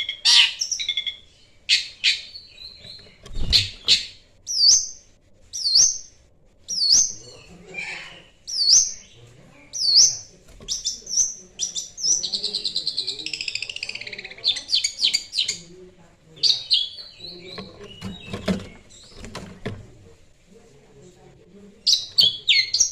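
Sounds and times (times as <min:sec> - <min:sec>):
bird chattering trill: 0:09.7 - 0:15.6.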